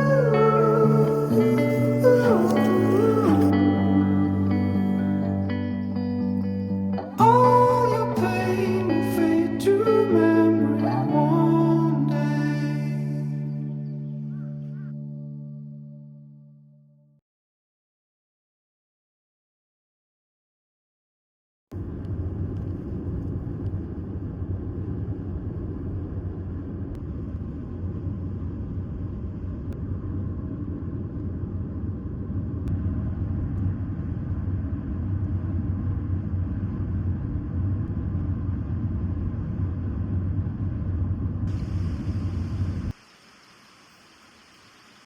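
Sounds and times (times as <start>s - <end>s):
vehicle rumbling in motion: 21.7s - 43.0s.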